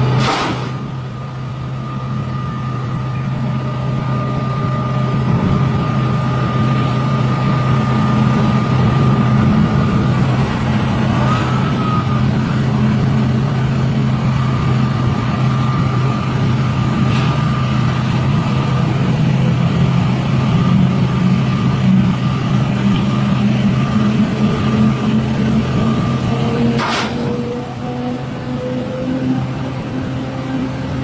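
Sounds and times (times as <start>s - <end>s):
excavator diesel engine drone: 0.0s - 31.0s
high whine: 0.0s - 31.0s
rising and falling whine: 0.0s - 31.0s.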